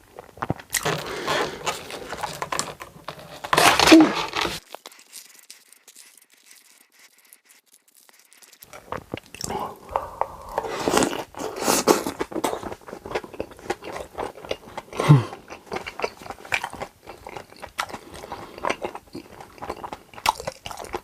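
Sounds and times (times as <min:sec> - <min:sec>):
crunchy chewing: 0:00.0 - 0:21.0
person murmuring: 0:15.0 - 0:15.4.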